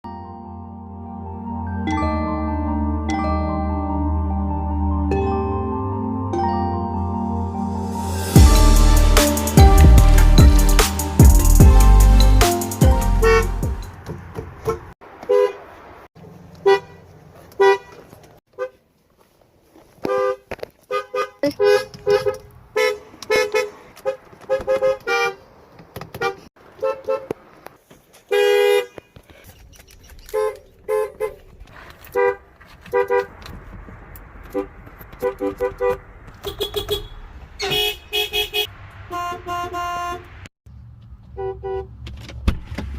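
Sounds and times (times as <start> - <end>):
car horns tooting: 8.4 - 15.7, 16.6 - 18.8, 20.0 - 27.4, 28.2 - 29.2, 30.3 - 33.4, 34.5 - 40.5, 41.3 - 42.0.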